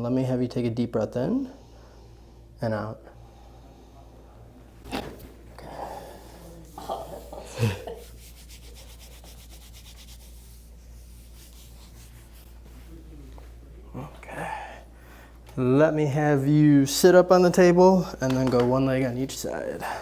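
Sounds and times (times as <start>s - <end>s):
hands rubbing on a back: 6.1s - 13.0s.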